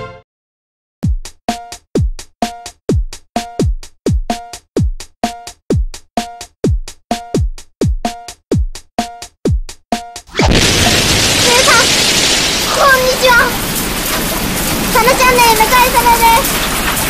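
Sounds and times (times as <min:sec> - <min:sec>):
drum machine kick beat: 0:01.0 - 0:10.4.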